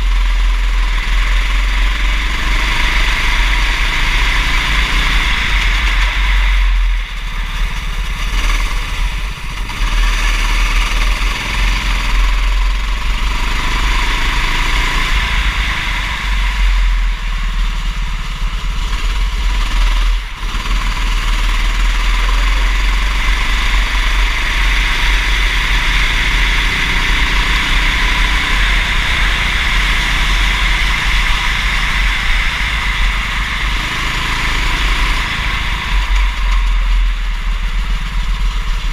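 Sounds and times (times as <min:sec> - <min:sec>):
racing kart engine running hard: 0:00.0 - 0:38.9.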